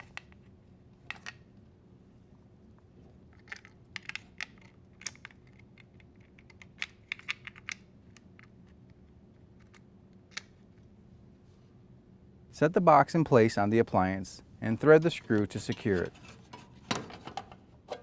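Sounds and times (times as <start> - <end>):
plastic connector clicks and rattles: 3.4 - 8.5.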